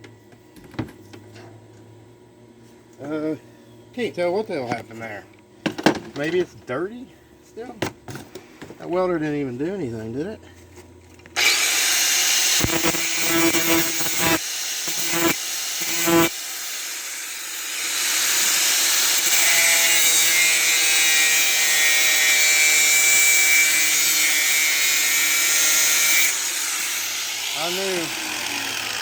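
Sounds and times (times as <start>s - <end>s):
angle grinder whine on metal: 11.4s - 29.0s.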